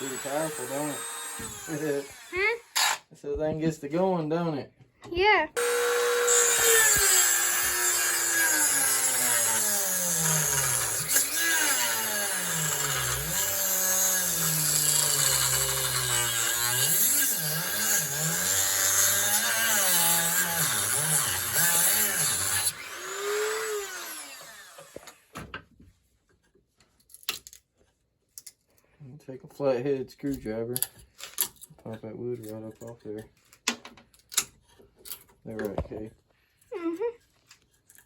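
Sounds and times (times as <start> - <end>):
rotary tool cutting wood: 0.0 - 3.1, 5.6 - 25.3.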